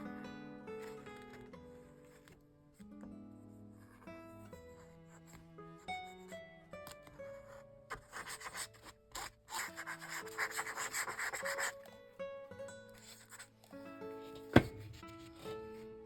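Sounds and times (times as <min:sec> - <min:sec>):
soft music with plucked notes: 0:00.0 - 0:16.0
hand rubbing paper: 0:07.9 - 0:11.8.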